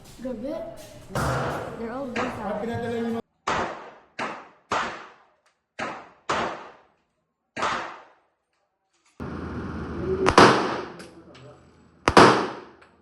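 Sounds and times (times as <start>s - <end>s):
handgun shots: 3.4s - 7.0s, 7.6s - 8.2s, 10.3s - 11.1s, 12.1s - 12.8s.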